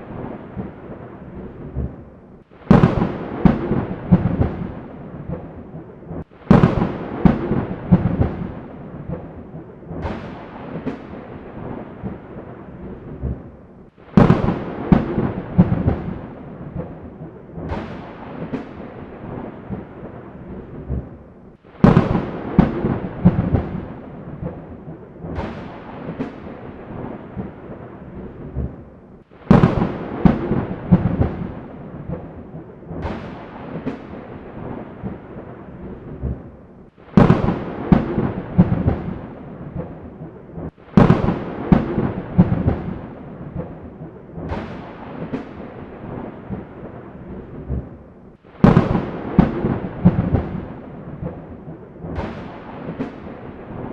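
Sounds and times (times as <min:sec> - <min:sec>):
thunder claps and rumble: 0:00.0 - 0:53.9
rain hiss: 0:29.2 - 0:35.6.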